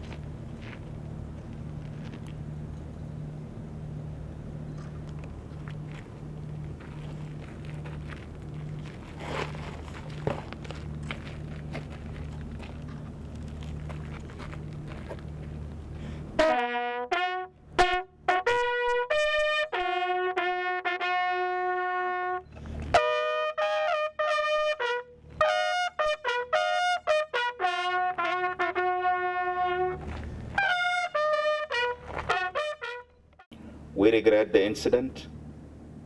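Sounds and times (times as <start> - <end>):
low steady hum: 0.0 - 36.0
solo trumpet playing: 16.4 - 33.5.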